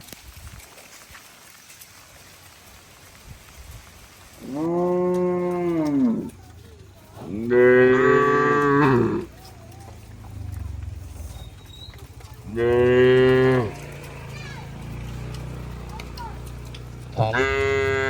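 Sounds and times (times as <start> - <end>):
cattle mooing: 4.4 - 6.4, 7.2 - 11.3, 12.4 - 18.0.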